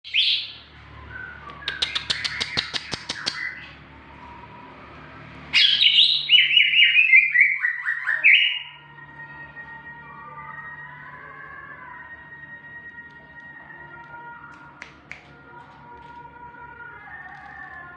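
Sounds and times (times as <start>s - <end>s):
bird singing: 0.0s - 9.2s.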